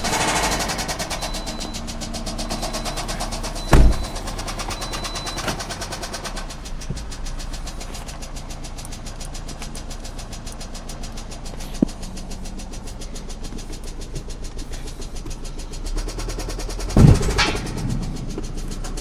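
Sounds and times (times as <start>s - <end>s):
engine running with rod knock: 0.0s - 19.0s
loud thump: 3.7s - 4.2s, 17.0s - 18.1s.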